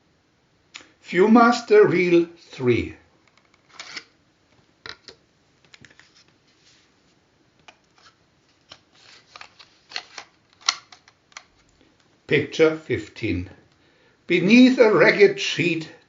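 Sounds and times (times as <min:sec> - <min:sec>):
paper rustling: 0:07.8 - 0:10.8.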